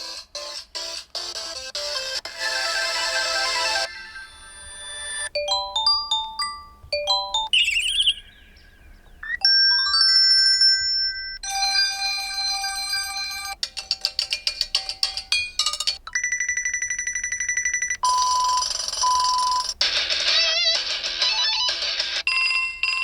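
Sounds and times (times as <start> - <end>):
electronic ringtones: 2.4 - 8.2, 9.2 - 13.6.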